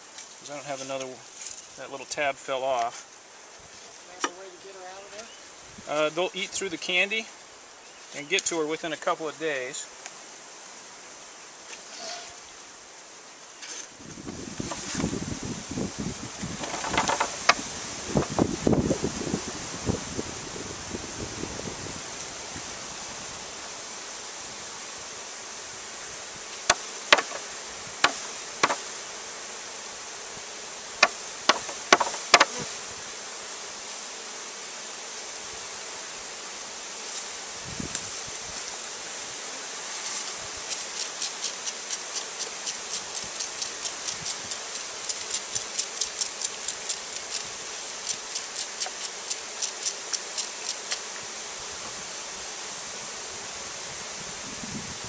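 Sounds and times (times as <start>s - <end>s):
steady high hiss: 0.0s - 55.0s
sharp knocks: 26.7s - 27.4s, 28.0s - 28.8s, 31.0s - 32.6s.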